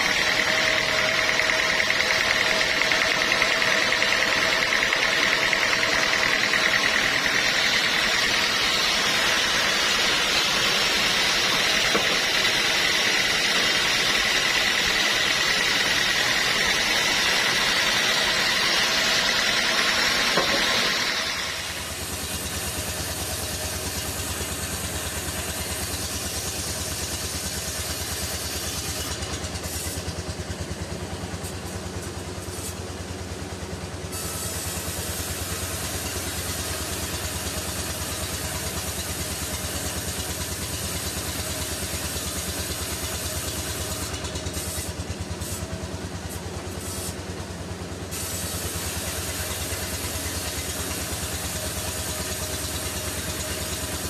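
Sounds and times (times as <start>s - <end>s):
engine-like drone: 0.0s - 28.2s
sawmill machinery whine: 0.0s - 54.0s.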